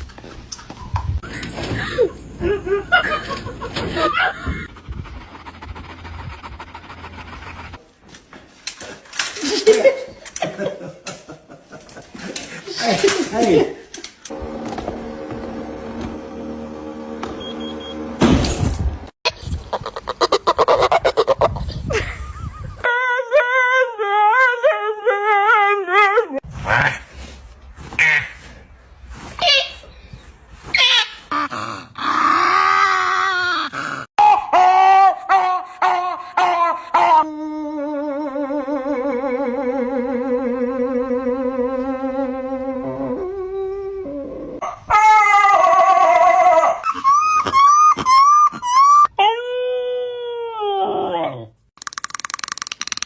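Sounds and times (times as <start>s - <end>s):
dog panting: 4.6s - 7.8s
dog squeaky whining: 30.8s - 31.2s, 44.6s - 49.4s
dog whining howl: 41.2s - 51.5s.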